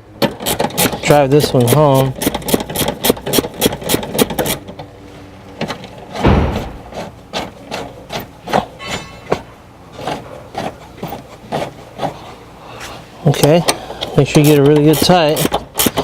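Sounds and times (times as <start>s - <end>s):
hand ratchet clicking: 1.6s - 4.6s, 13.7s - 16.0s
dull knock: 6.2s - 6.9s.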